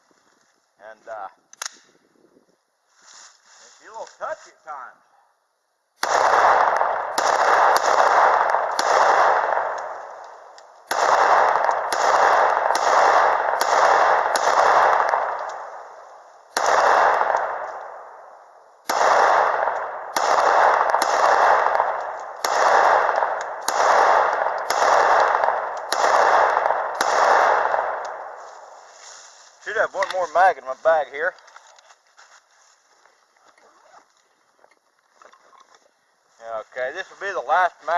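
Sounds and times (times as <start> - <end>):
pistol shots echoing: 6.0 - 28.7.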